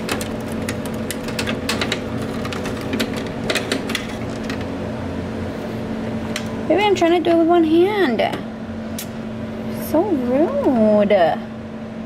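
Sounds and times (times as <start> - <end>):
clicks and knocks of handling items: 0.0 - 4.7
steady hum: 0.0 - 12.0.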